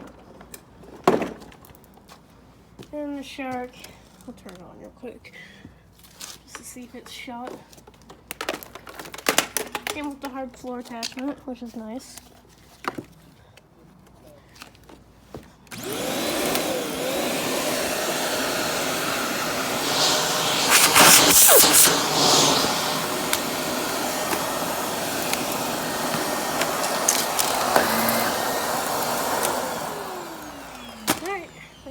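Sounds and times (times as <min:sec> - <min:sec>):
vacuum cleaner motor running: 0:15.8 - 0:31.9.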